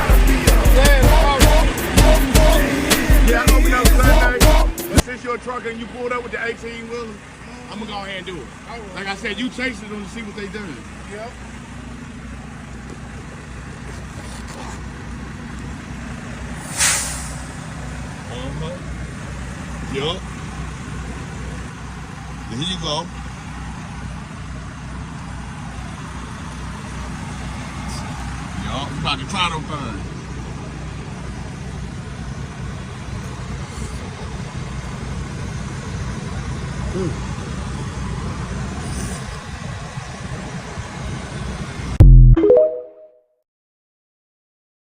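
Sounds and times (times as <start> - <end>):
diesel engine idling: 0.0 - 42.0
air brakes hissing: 16.5 - 17.8, 38.8 - 39.5.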